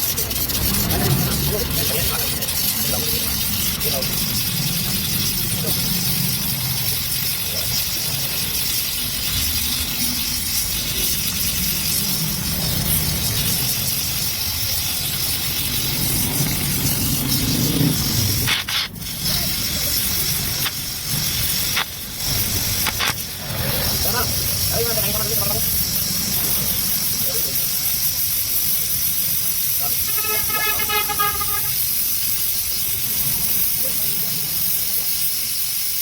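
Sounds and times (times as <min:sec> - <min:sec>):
low rumble: 0:00.0 - 0:26.9
welding torch flame hissing: 0:00.0 - 0:36.0.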